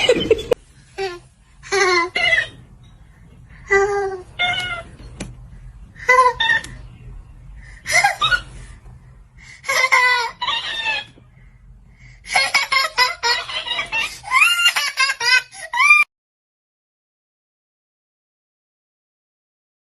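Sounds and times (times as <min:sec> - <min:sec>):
squeaky chipmunk-like toy voice: 0:04.4 - 0:04.9, 0:10.3 - 0:11.2.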